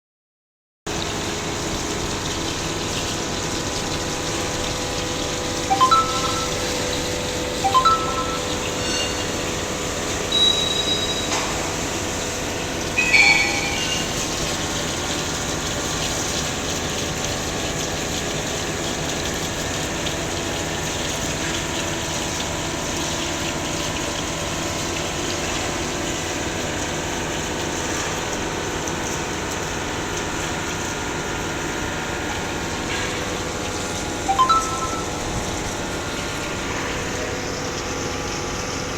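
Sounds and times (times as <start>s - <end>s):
short chime-like tones: 5.7s - 7.0s, 7.6s - 9.3s, 10.3s - 11.4s, 13.0s - 14.1s, 34.3s - 35.4s.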